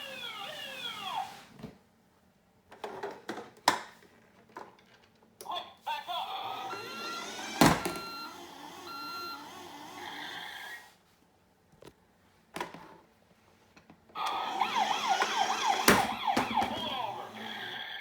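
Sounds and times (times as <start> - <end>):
yelping police siren: 14.2 - 18.0.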